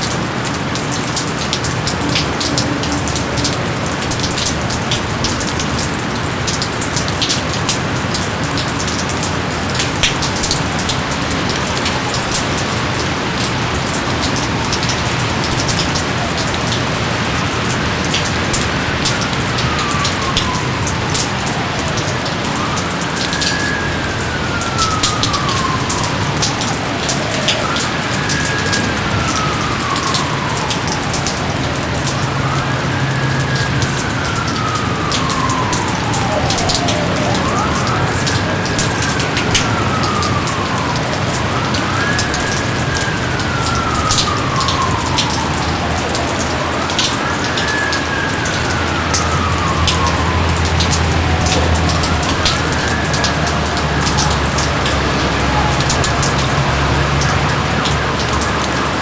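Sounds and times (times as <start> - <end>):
steady rain with drops: 0.0 - 59.0
gliding rising and falling tone: 47.8 - 57.7.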